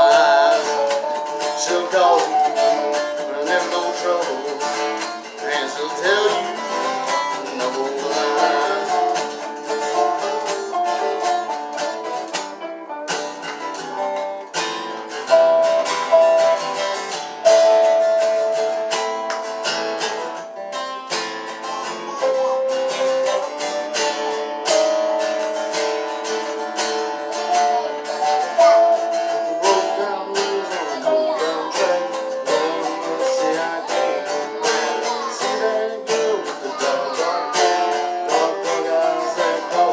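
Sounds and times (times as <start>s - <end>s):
acoustic guitars playing folk music: 0.0s - 39.9s.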